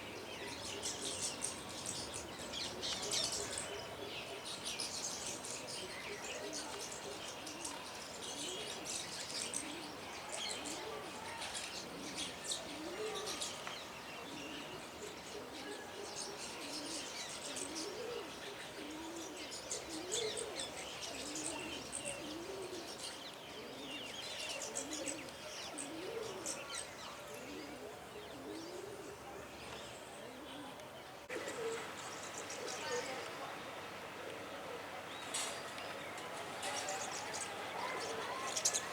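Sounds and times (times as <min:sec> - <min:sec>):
small birds chirping: 0:00.0 - 0:38.9
low cooing call: 0:05.2 - 0:38.9.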